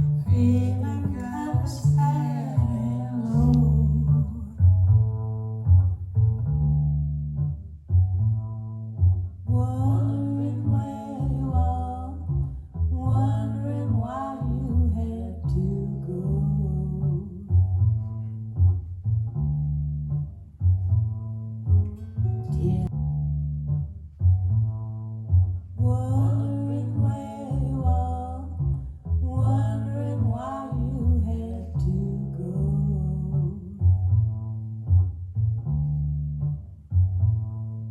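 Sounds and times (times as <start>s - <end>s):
person singing: 0.0s - 4.6s
guitar: 0.0s - 37.9s
plucked upright bass: 0.0s - 37.9s.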